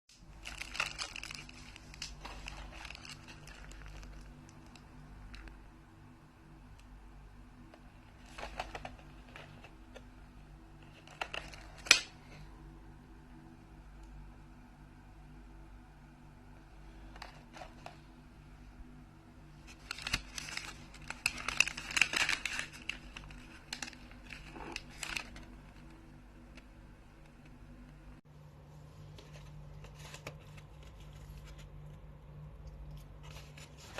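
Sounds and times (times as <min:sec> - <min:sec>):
low electrical hum: 0:00.1 - 0:33.9
paper food packaging crinkling: 0:00.2 - 0:05.6, 0:08.0 - 0:10.0, 0:10.8 - 0:12.4, 0:19.6 - 0:26.6, 0:29.1 - 0:33.9.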